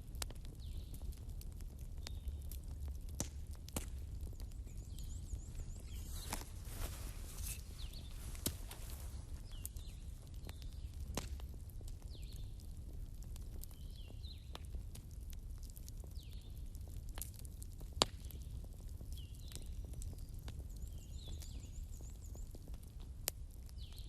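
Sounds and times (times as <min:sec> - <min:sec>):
bonfire crackling and popping: 0:00.0 - 0:24.0
low rumble of flames: 0:00.0 - 0:24.0
birds chirping: 0:04.2 - 0:11.0.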